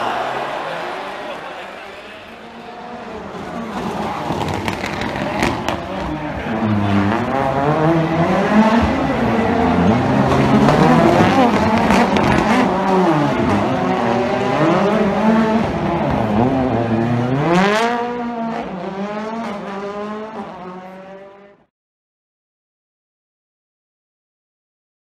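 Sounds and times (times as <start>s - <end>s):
rally car engine revving: 2.2s - 21.7s.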